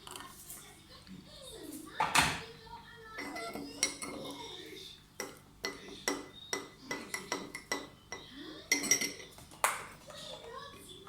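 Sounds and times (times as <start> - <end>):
cutlery clinking against crockery: 3.1 - 4.6, 5.2 - 10.8.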